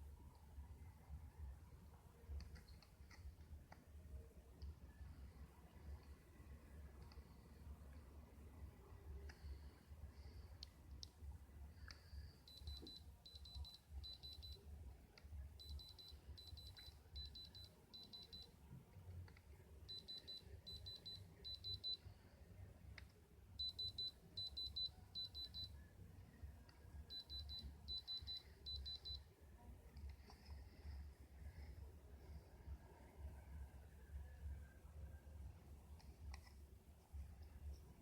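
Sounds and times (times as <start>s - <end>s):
short high-pitched beeps: 12.4s - 14.6s, 15.6s - 18.5s, 19.9s - 22.0s, 23.6s - 25.8s, 27.1s - 29.3s.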